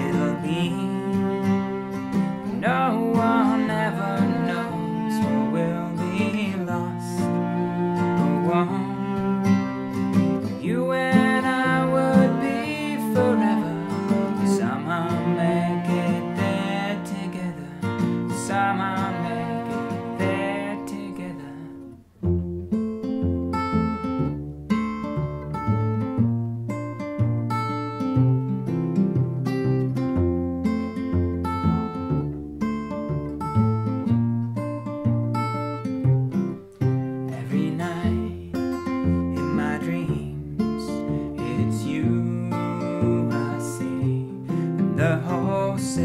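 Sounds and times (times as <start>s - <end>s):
cello: 0.0s - 26.4s, 27.2s - 46.0s
acoustic guitar: 0.0s - 46.0s.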